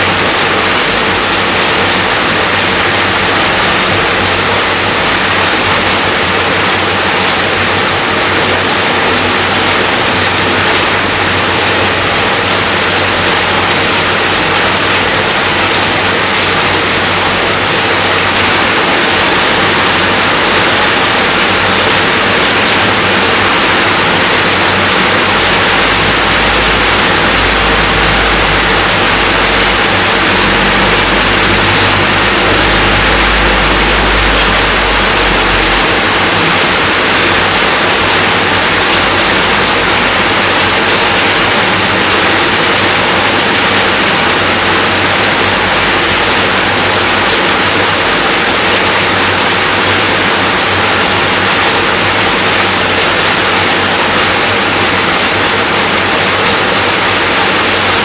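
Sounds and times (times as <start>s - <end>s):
heavy rain: 0.0s - 58.0s
low rumble: 25.1s - 38.1s.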